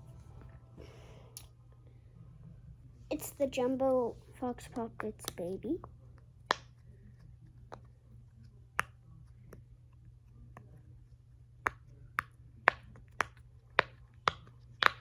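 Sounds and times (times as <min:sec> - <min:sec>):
pop-it fidget bubbles popping: 0:11.7 - 0:15.0.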